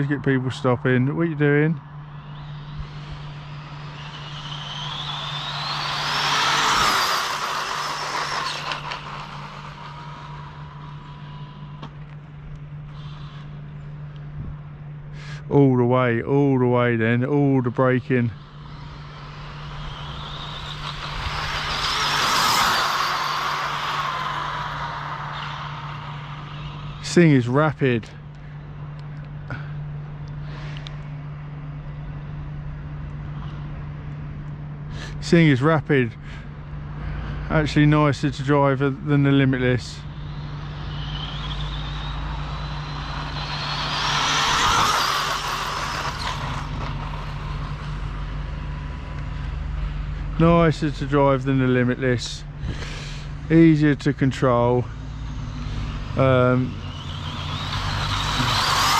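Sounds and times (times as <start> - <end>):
rc car speeding past: 0.0 - 14.2, 17.0 - 33.9, 34.9 - 58.9
steady low hum: 0.0 - 58.9
electric motor whine: 1.8 - 14.7, 18.3 - 27.4, 39.0 - 50.3, 54.9 - 58.9.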